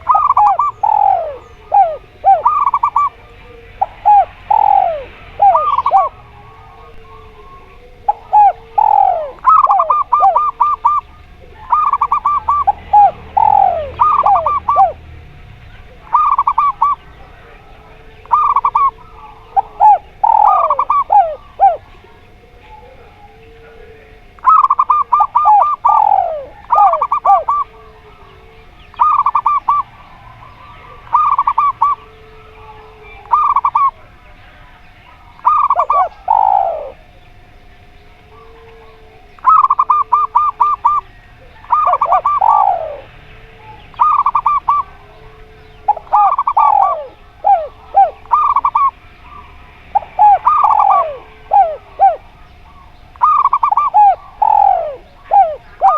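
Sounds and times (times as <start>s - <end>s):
doves cooing: 0.0s - 55.9s
faint steady hum: 0.0s - 55.9s.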